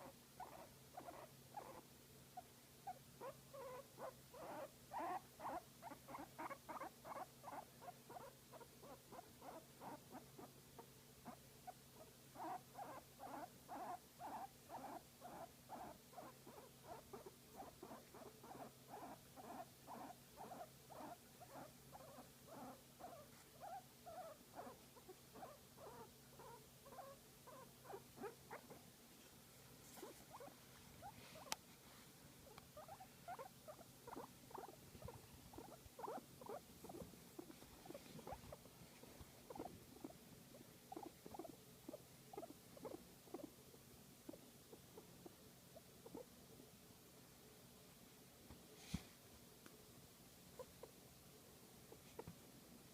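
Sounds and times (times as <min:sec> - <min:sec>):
guinea pig short calls: 0:00.0 - 0:10.5, 0:11.2 - 0:28.8, 0:30.0 - 0:31.6, 0:32.4 - 0:38.6, 0:39.5 - 0:43.6, 0:46.0 - 0:46.3.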